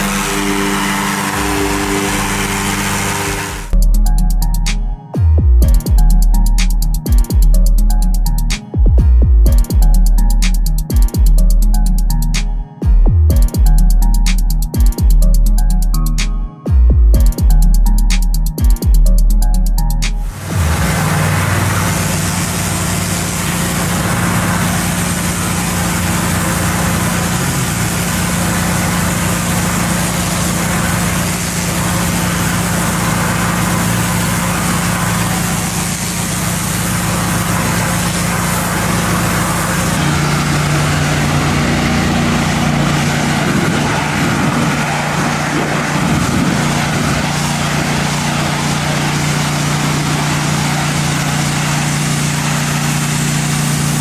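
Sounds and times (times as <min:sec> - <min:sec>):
pressure washer engine running: 0:00.0 - 0:03.8, 0:20.0 - 0:54.0
water spray hiss: 0:00.0 - 0:03.8, 0:20.1 - 0:54.0.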